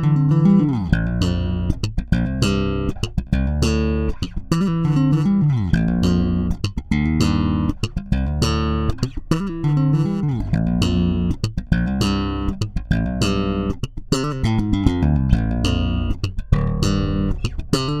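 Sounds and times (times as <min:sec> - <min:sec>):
electric bass guitar riff: 0:00.0 - 0:18.0.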